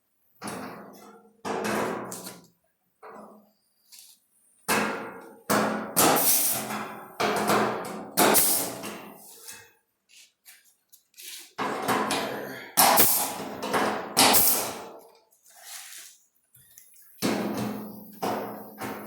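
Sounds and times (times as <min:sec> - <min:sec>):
hammer striking sheet metal: 0:04.7 - 0:09.1, 0:12.8 - 0:15.0, 0:17.2 - 0:19.0.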